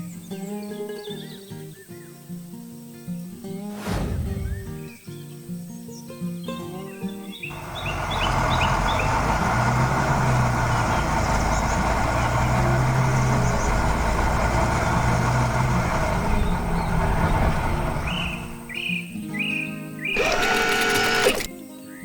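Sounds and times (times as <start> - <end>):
heavy vehicle engine running: 7.5 - 18.8, 20.2 - 21.5.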